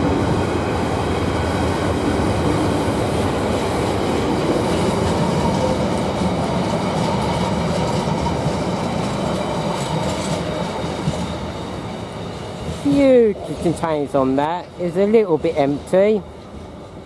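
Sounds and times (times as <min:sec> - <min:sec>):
freight train wagons rolling past: 0:00.0 - 0:17.0.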